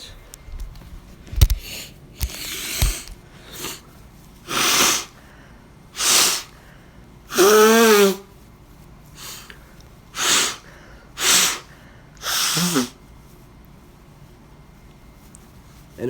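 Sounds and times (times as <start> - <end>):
man sneezing: 4.5 - 5.2, 6.0 - 6.6, 7.3 - 8.3, 10.2 - 13.0.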